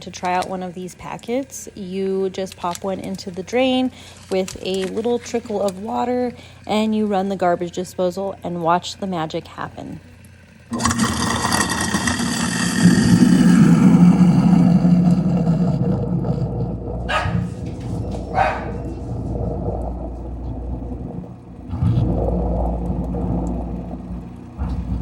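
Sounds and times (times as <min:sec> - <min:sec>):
garbage disposal grinding: 0:00.0 - 0:25.0
water trickling: 0:10.7 - 0:25.0.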